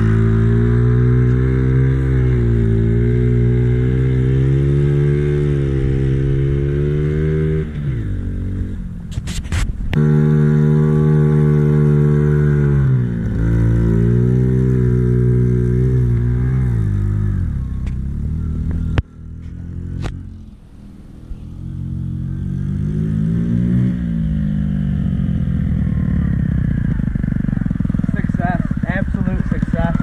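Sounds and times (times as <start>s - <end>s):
small motorbike engine revving: 0.0s - 8.8s, 9.9s - 30.0s.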